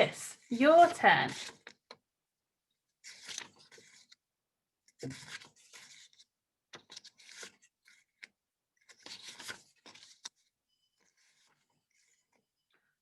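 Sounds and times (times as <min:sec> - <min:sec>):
paper cards sliding on table: 0:03.0 - 0:04.2, 0:05.0 - 0:12.4.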